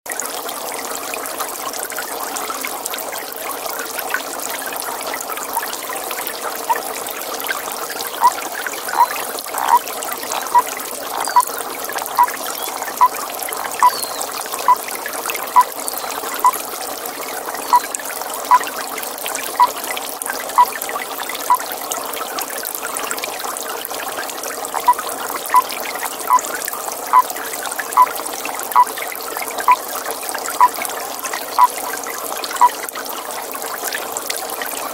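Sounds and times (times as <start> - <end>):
water trickling: 0.1 - 34.9
toad calling: 6.6 - 6.9, 8.1 - 14.9, 15.5 - 16.6, 17.7 - 17.9, 24.8 - 26.4, 28.7 - 28.9, 30.6 - 30.8, 31.5 - 31.8, 32.6 - 32.8.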